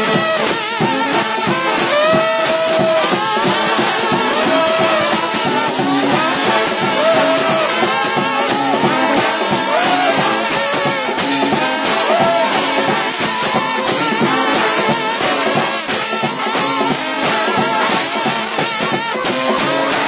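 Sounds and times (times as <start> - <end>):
lively music with drums and brass: 0.0 - 20.0.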